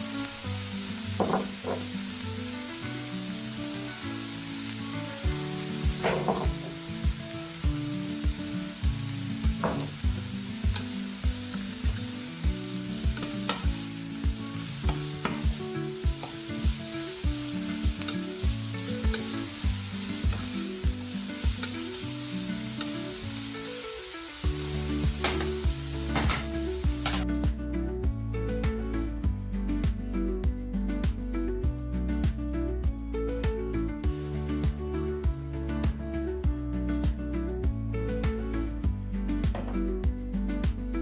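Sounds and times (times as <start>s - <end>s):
food sizzling in a frying pan: 0.0s - 27.3s, 34.0s - 35.0s
background music with beat: 5.2s - 22.2s, 24.4s - 41.0s.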